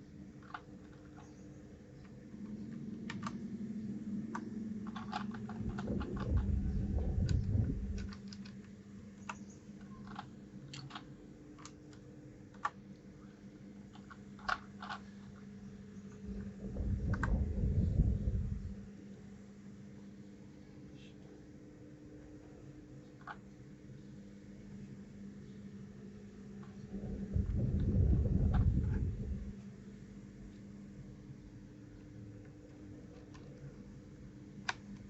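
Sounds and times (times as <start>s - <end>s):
steady low hum: 0.0s - 35.0s
mechanical keyboard keys clicking: 2.4s - 3.4s, 4.3s - 12.8s
low rumbling noise: 3.2s - 8.2s, 16.2s - 19.0s, 26.8s - 29.6s.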